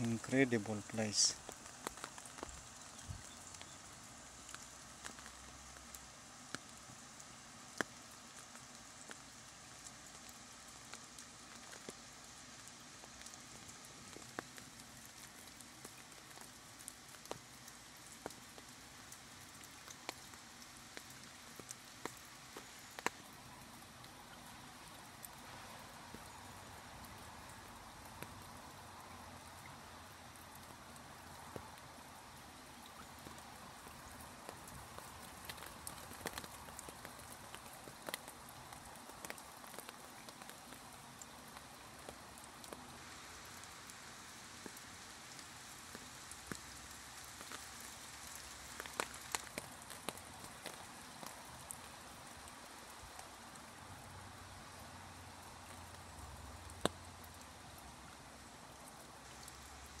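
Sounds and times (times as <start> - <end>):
flowing river water: 0.0 - 60.0
sharp taps and drips: 0.5 - 3.7, 4.4 - 6.8, 19.5 - 24.2, 31.4 - 42.8, 47.4 - 51.8.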